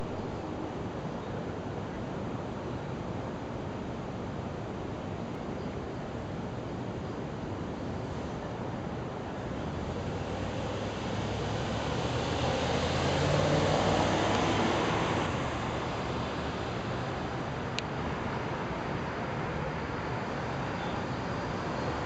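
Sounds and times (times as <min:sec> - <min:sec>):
street traffic: 0:00.0 - 0:01.2, 0:08.1 - 0:22.0
vehicle passing: 0:10.8 - 0:16.0.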